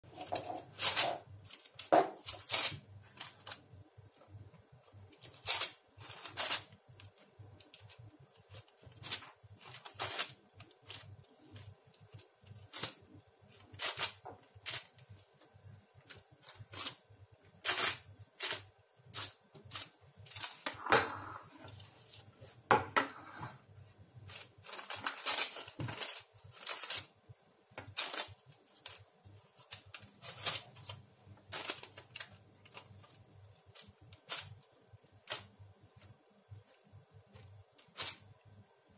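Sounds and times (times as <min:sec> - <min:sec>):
dishes and utensils clattering: 0:20.7 - 0:21.6, 0:22.8 - 0:23.6.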